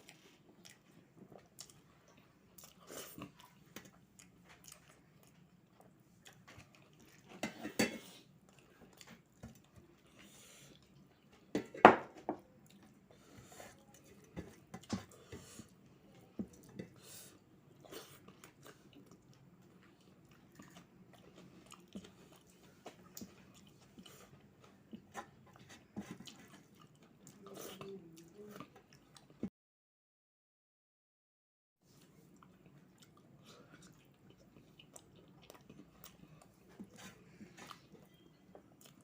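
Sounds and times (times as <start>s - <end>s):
person chewing food: 0.0s - 11.8s, 12.4s - 29.5s, 31.9s - 39.0s.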